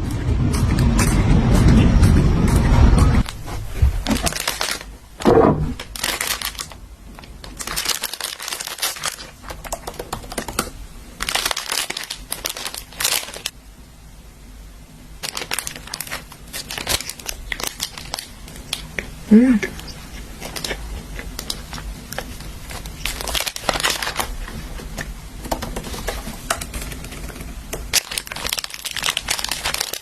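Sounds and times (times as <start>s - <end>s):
loud low rumble: 0.0s - 6.0s
plastic packaging crinkling: 3.2s - 13.6s, 15.2s - 19.2s, 19.8s - 30.0s.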